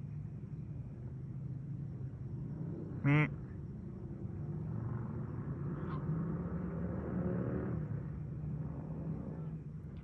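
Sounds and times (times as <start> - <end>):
distant engine hum: 0.0 - 10.0.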